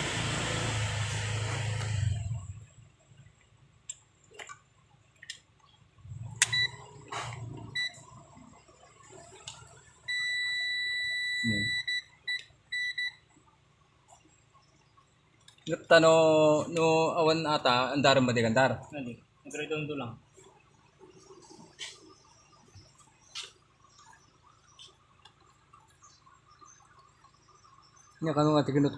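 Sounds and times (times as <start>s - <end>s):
continuity tester beeps: 6.4s - 6.9s, 7.7s - 8.0s, 10.0s - 13.2s.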